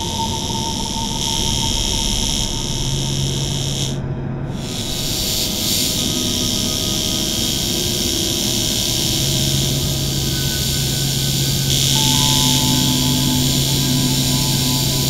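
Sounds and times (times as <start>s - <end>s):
low hum: 0.0s - 15.0s
rushing hiss: 4.6s - 15.0s.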